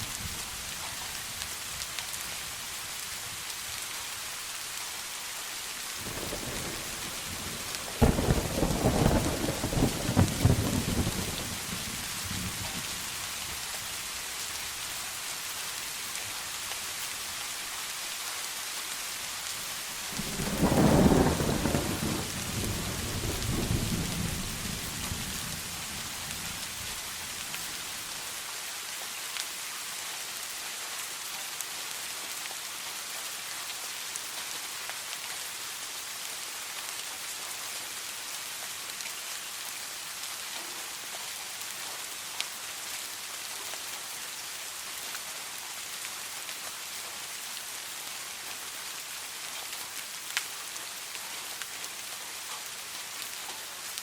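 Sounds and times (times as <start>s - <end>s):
heavy rain: 0.0s - 54.0s
thunderclap rumbling: 6.1s - 12.8s, 20.0s - 26.6s.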